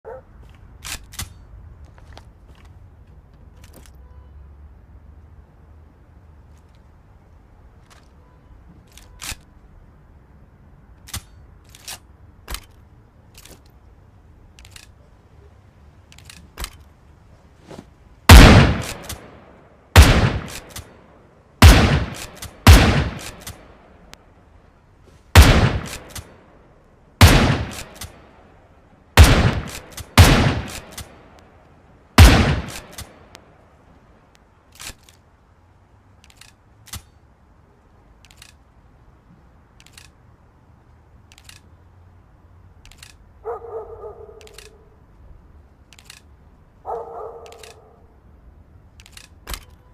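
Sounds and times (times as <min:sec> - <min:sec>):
shotgun shots: 0:18.3 - 0:20.9, 0:21.6 - 0:23.8, 0:25.3 - 0:26.4, 0:27.2 - 0:28.3, 0:29.2 - 0:31.2, 0:32.2 - 0:33.2
light clicks: 0:44.4 - 0:44.9, 0:47.4 - 0:47.9.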